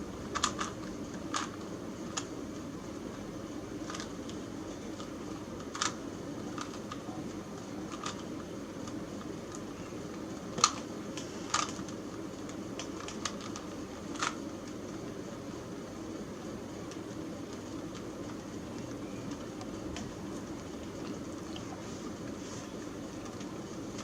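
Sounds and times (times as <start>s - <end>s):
puzzle cube plastic clicks: 7.9s - 8.3s, 11.5s - 14.4s.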